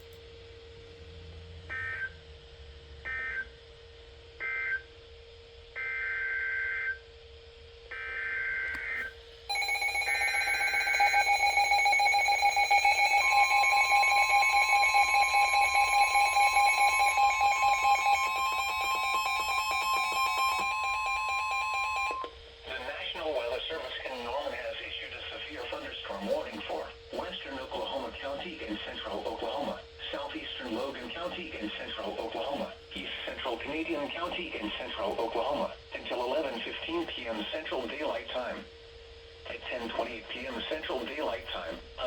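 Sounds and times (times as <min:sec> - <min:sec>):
warbling data bursts: 0:09.5 - 0:22.2
steady tone: 0:09.5 - 0:22.3
two-tone attention signal: 0:09.5 - 0:22.3.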